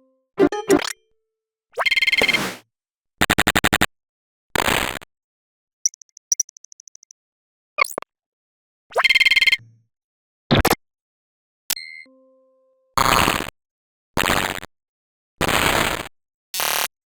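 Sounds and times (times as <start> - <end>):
quick electronic sweep: 2.2 - 2.6.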